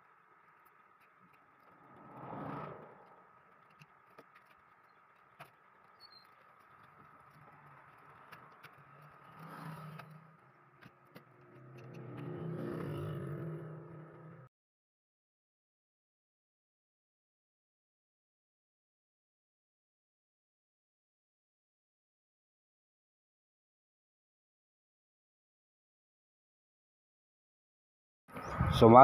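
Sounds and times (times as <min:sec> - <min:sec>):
low rumble: 0:00.9 - 0:04.1.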